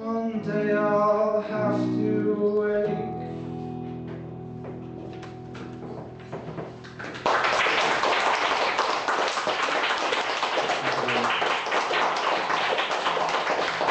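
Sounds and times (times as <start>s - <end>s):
audience applause: 6.8s - 13.9s.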